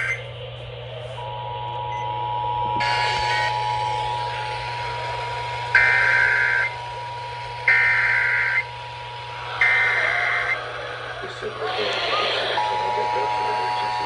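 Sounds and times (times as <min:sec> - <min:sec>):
radio hiss: 0:00.0 - 0:00.3, 0:02.8 - 0:14.0
two-tone attention signal: 0:00.0 - 0:00.3
low hum: 0:00.0 - 0:14.0
digital data bursts: 0:02.8 - 0:06.9, 0:07.6 - 0:14.0.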